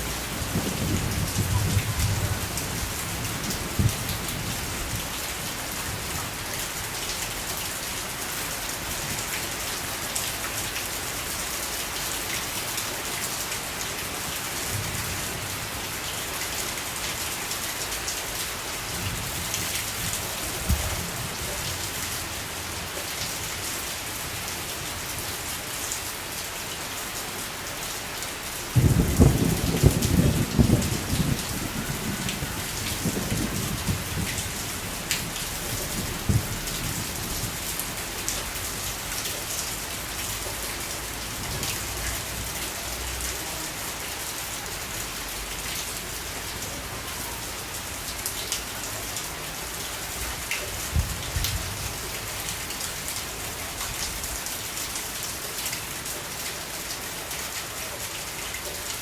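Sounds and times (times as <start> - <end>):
low rumble of thunder: 0.0 - 6.2, 19.0 - 21.9, 28.8 - 38.1, 50.8 - 52.0
steady rain: 0.0 - 59.0.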